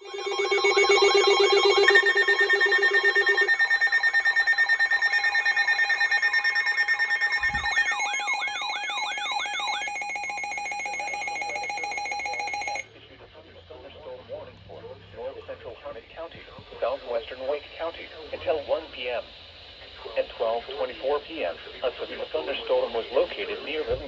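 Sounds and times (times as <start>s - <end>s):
low electronic tone: 0.0s - 11.8s
electronic alert tones pulsing: 0.0s - 12.8s.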